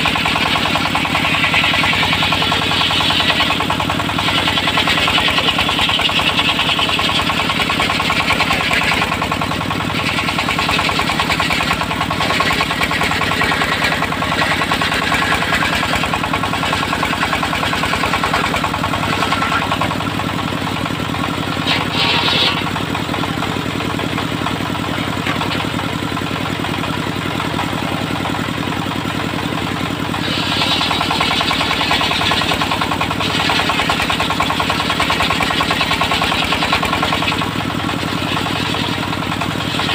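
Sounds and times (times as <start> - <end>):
saw cutting through log: 0.0 - 39.9
sawmill engine running: 0.0 - 39.9.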